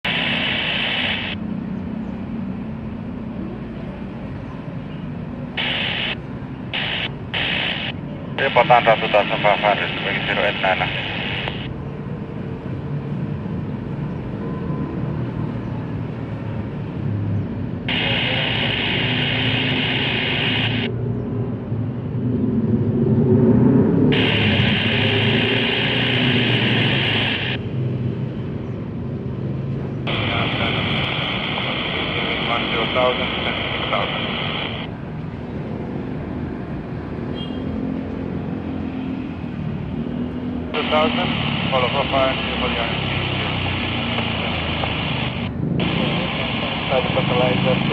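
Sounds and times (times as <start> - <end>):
radio static hiss: 0.0 - 1.4, 5.6 - 11.8, 17.9 - 20.9, 24.1 - 27.7, 30.1 - 35.0, 40.7 - 47.9
faint droning hum: 5.6 - 6.2, 6.8 - 11.7, 17.9 - 20.9, 24.2 - 27.6, 30.1 - 34.9.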